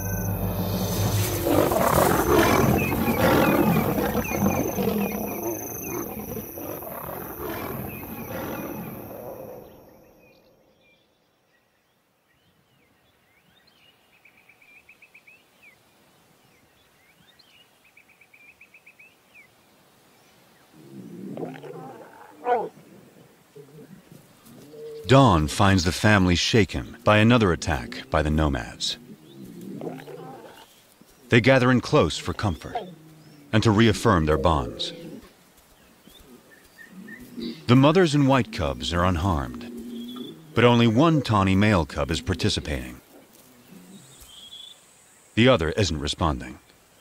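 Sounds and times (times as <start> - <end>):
lions roaring and snarling: 0.0 - 10.0, 20.7 - 25.6, 26.8 - 30.8, 31.5 - 35.4, 36.2 - 44.2
faint rapid trilling calls: 1.2 - 10.2.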